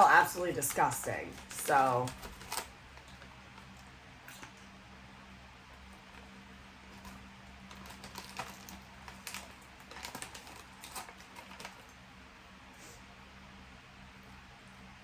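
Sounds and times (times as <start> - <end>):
crunchy chips being chewed: 5.8 - 12.0.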